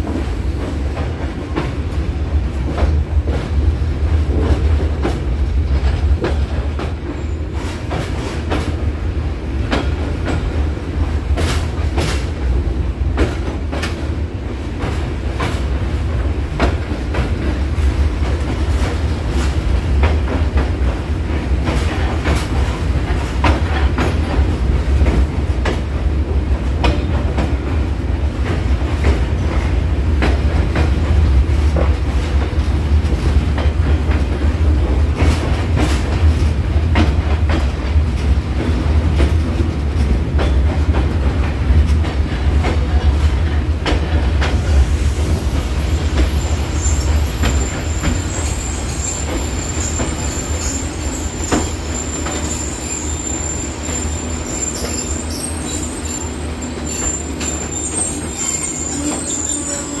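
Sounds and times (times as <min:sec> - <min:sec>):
train rumbling on rails: 0:00.0 - 1:00.0
train wheel squeal: 0:07.0 - 0:07.9, 0:44.6 - 1:00.0.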